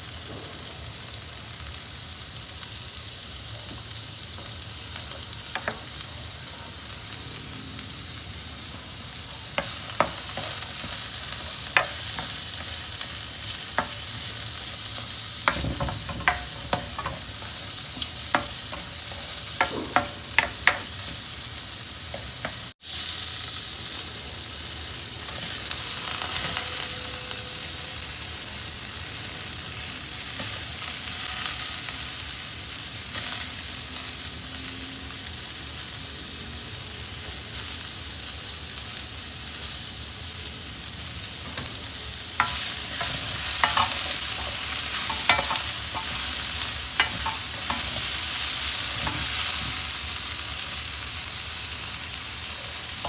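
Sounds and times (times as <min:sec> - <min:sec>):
food sizzling in a pan: 0:00.0 - 0:53.0
utensil scraping a pan: 0:15.0 - 0:21.3, 0:42.4 - 0:49.4.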